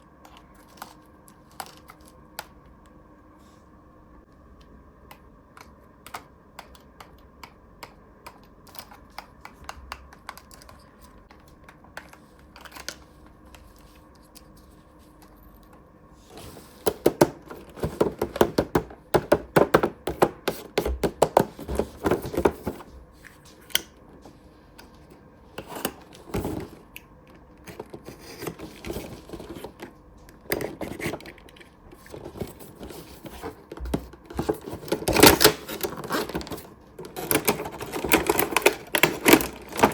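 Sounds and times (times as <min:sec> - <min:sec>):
packaging rustling: 0:27.6 - 0:39.9.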